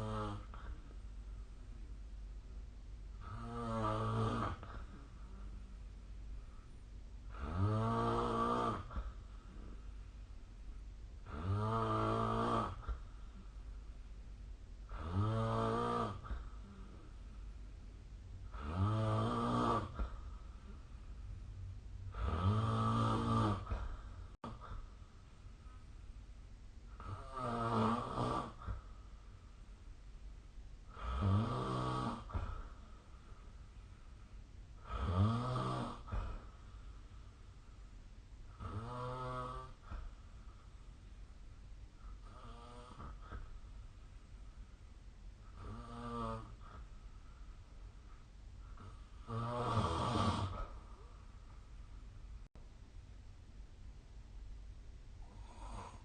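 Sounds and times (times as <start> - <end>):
person snoring: 0.0 - 0.8, 3.2 - 5.2, 7.3 - 9.8, 11.2 - 13.0, 14.9 - 17.1, 18.5 - 20.8, 22.1 - 24.8, 27.0 - 28.8, 30.9 - 32.9, 34.8 - 36.6, 38.5 - 40.1, 45.5 - 46.9, 48.8 - 51.1, 55.2 - 56.0.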